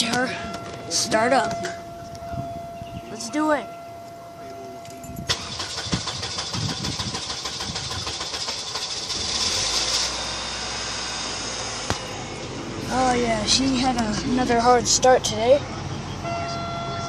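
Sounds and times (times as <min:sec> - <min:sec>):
starter cranking engine: 0:05.2 - 0:11.8
car engine running: 0:05.2 - 0:16.3.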